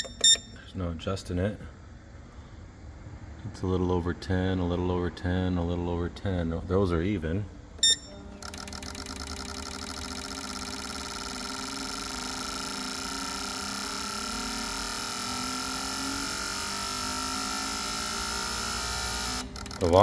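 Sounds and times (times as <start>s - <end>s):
fuel injectors pulsing rapidly: 7.8s - 20.0s.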